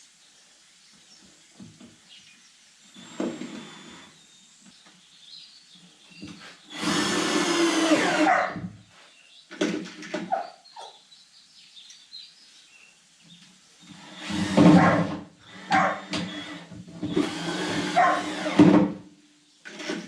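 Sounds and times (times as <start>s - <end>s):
power drill turning screw: 3.0s - 4.2s, 6.7s - 8.3s, 13.9s - 18.8s, 19.6s - 20.0s
sharp knocks and clunks: 9.5s - 10.4s, 15.8s - 19.0s.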